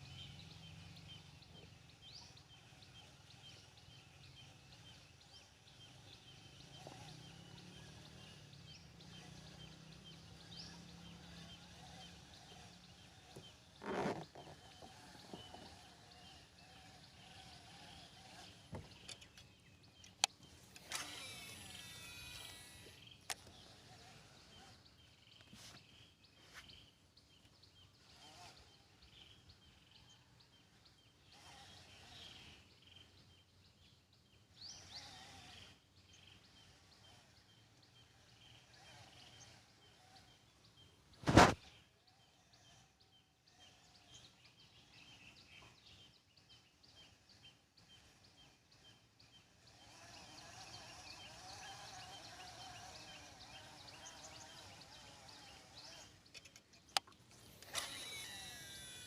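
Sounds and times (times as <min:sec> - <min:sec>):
wild birds chirping and calling: 0:00.0 - 0:59.0
quick repeated chirping: 0:57.5 - 0:59.0.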